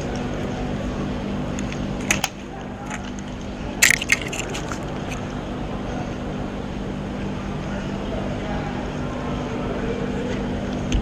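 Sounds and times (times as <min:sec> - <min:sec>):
steady low hum: 0:00.0 - 0:11.0
sharp clicks and rattles: 0:01.6 - 0:05.3.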